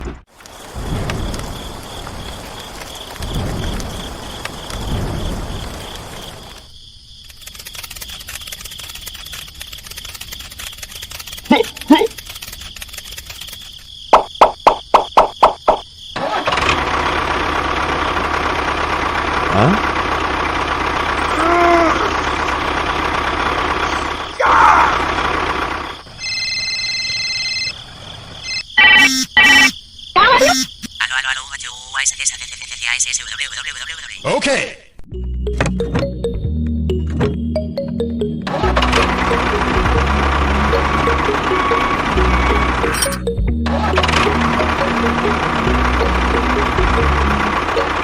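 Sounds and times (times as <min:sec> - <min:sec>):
insects chirping: 0:00.3 - 0:34.3, 0:35.4 - 0:43.4
fast even clicking: 0:07.2 - 0:15.8.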